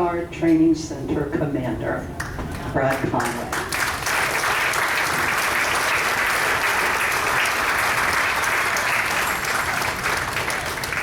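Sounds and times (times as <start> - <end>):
audience applauding: 3.2 - 11.0.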